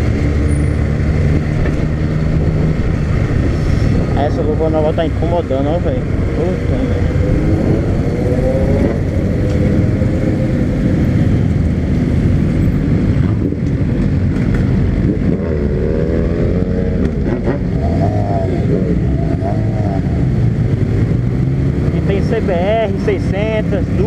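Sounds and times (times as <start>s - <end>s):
wind rush: 0.0s - 16.9s
motorcycle engine rumbling: 0.0s - 24.0s.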